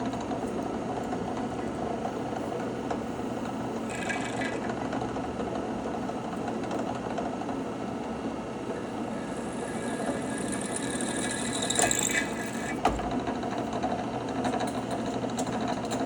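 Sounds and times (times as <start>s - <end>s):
motor whine: 8.7s - 13.0s
power tool motor running: 9.1s - 12.8s.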